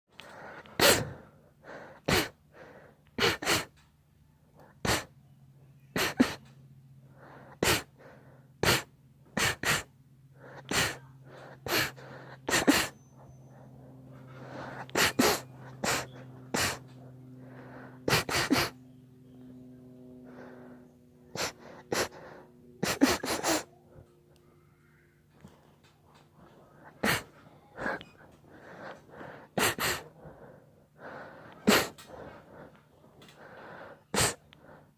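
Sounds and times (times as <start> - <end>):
faint steady hum: 0.1 - 34.9
person sneezing: 0.8 - 1.2, 2.1 - 2.4, 3.2 - 3.7, 4.8 - 5.1, 6.0 - 6.4, 7.6 - 7.9, 8.6 - 9.9, 10.6 - 11.0, 11.7 - 13.0, 14.8 - 16.8, 18.1 - 18.8, 21.4 - 22.2, 22.8 - 23.7, 26.9 - 28.0, 29.6 - 30.1, 31.6 - 32.0, 34.1 - 34.4
gasping in-breaths: 7.1 - 34.9.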